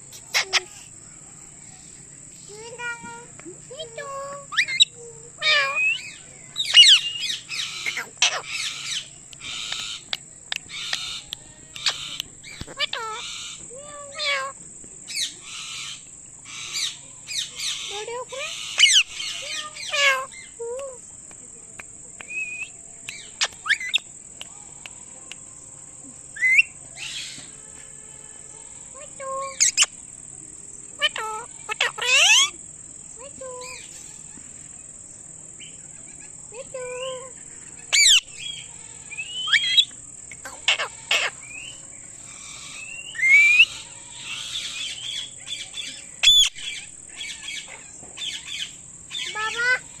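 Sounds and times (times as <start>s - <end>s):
parakeet chirps and whistles: 4.5s - 10.1s, 18.5s - 20.3s, 22.4s - 24.1s, 26.4s - 27.4s, 29.5s - 29.9s, 31.0s - 32.5s, 37.9s - 38.6s, 39.2s - 39.9s, 40.7s - 47.6s
parakeet chirping and whistling: 6.6s - 9.0s, 38.0s - 38.3s, 46.2s - 46.8s
sharp ticks: 8.9s - 12.7s, 23.0s - 25.5s.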